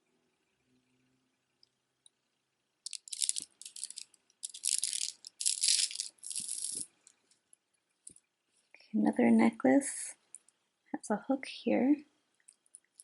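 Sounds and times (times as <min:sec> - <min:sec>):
beads clicking and clattering: 0:02.8 - 0:07.0.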